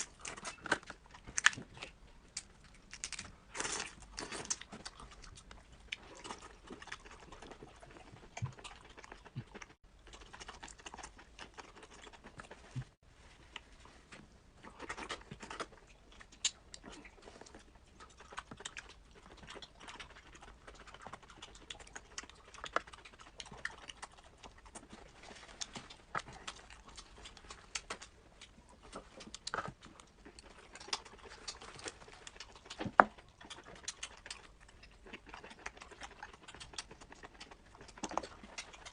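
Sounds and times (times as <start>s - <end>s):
chewing and mouth noises: 0.0s - 38.9s.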